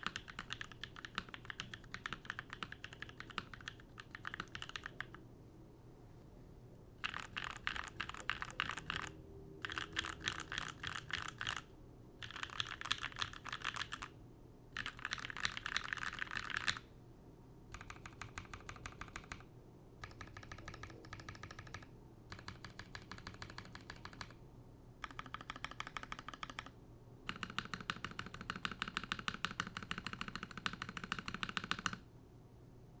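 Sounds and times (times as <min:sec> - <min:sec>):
mechanical keyboard key clicks: 0:00.0 - 0:05.2, 0:07.0 - 0:11.6, 0:25.0 - 0:26.7, 0:27.3 - 0:32.0.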